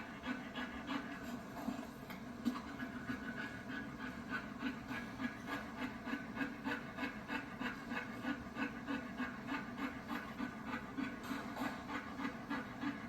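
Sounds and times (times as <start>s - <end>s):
dog panting: 0.0s - 13.0s.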